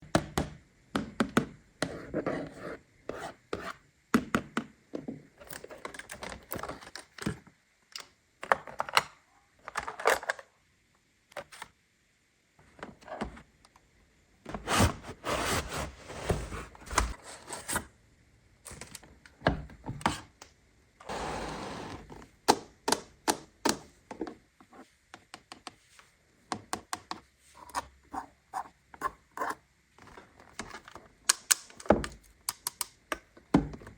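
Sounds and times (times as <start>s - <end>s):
plastic toy pieces clicking: 32.4s - 33.0s.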